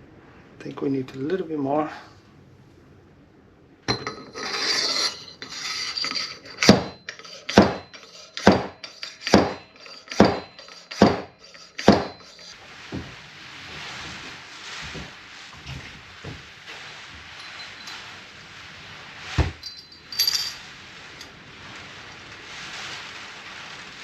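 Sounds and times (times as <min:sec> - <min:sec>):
tool sliding on metal tube: 0:03.9 - 0:15.9, 0:16.6 - 0:18.3
sharp metallic knocks: 0:06.6 - 0:12.5.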